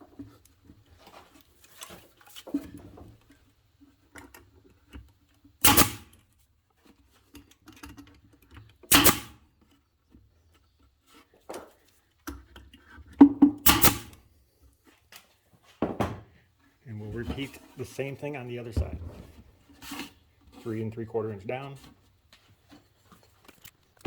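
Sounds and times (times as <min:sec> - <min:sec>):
brad nailer firing: 0:05.6 - 0:06.2, 0:08.9 - 0:09.4, 0:13.5 - 0:14.2.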